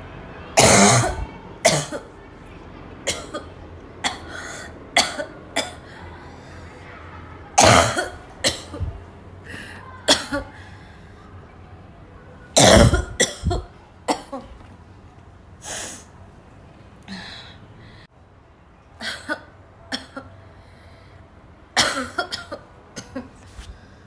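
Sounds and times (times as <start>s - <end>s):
person coughing: 0.6s - 2.1s, 7.6s - 9.0s, 9.6s - 10.5s, 12.6s - 14.5s, 21.8s - 23.3s.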